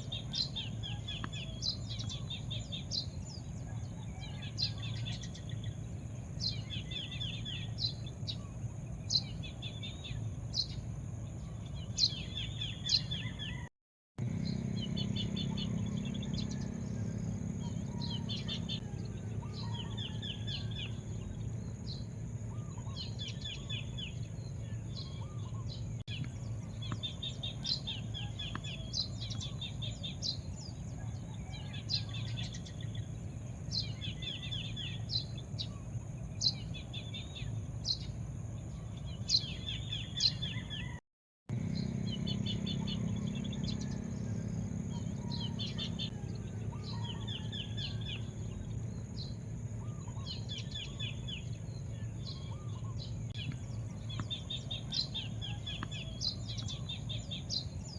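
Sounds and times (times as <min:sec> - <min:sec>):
small birds chirping: 0:00.0 - 0:57.9
low background rumble: 0:14.2 - 0:40.7, 0:41.5 - 0:57.9.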